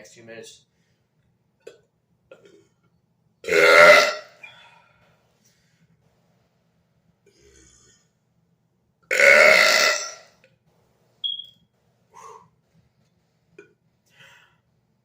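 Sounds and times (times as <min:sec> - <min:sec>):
man burping loudly: 0:03.4 - 0:04.4, 0:09.1 - 0:10.3.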